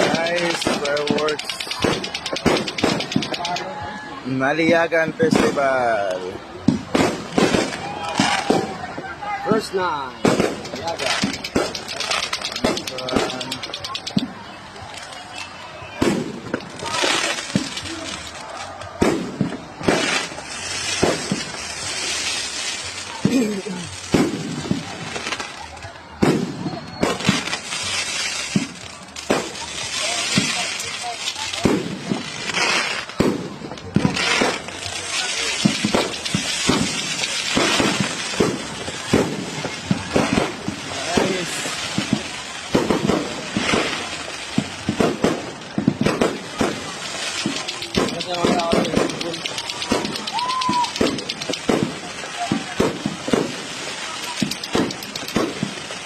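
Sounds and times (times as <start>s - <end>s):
crowd voices: 0.0s - 56.0s
fireworks bangs: 0.0s - 56.0s
fireworks crackling: 0.0s - 56.0s.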